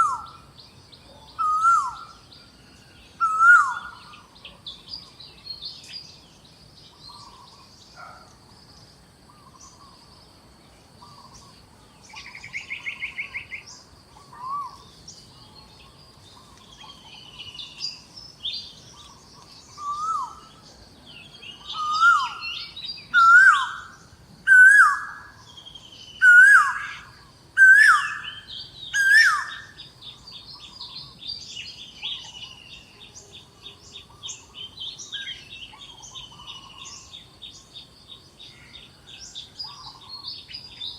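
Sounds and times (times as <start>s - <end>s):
bird trill: 0.0s - 6.2s, 11.0s - 40.9s
bird chirps: 0.0s - 40.9s
rapid bird chatter: 0.0s - 40.9s
bird whistled rising falling call: 1.4s - 2.2s, 3.2s - 4.2s, 21.6s - 25.4s, 26.2s - 29.8s.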